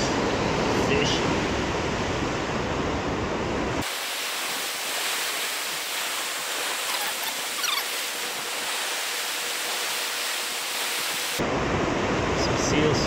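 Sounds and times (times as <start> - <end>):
ocean surf washing ashore: 0.0 - 12.4
faint short chirps: 6.9 - 7.9.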